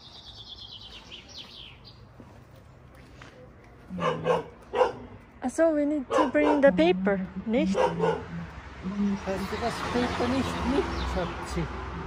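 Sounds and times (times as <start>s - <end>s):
dog barking: 3.9s - 5.1s, 6.1s - 6.8s, 7.7s - 8.4s.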